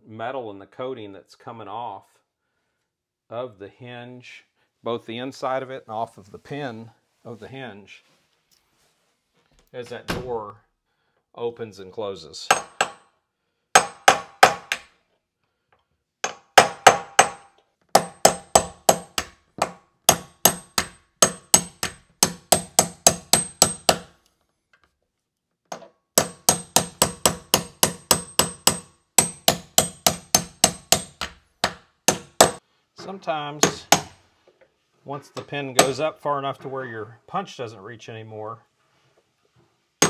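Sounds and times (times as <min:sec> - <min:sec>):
hammer striking metal punch: 0:12.5 - 0:13.0, 0:16.2 - 0:24.1, 0:26.2 - 0:32.6, 0:33.6 - 0:34.2, 0:35.8 - 0:36.0.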